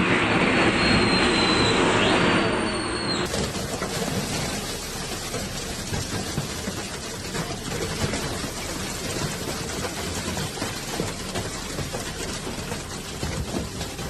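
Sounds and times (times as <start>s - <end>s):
heavy rain pelting a surface: 3.2s - 14.0s.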